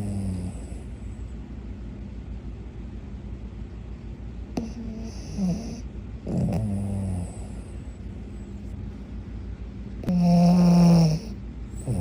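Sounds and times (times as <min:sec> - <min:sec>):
dog snoring: 0:00.0 - 0:00.9, 0:04.6 - 0:07.8, 0:10.0 - 0:12.0.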